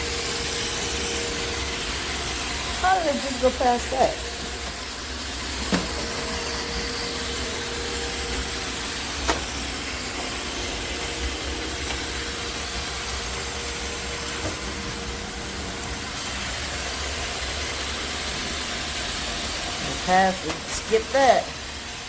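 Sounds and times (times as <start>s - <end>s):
robot vacuum whirring: 0.0s - 22.0s.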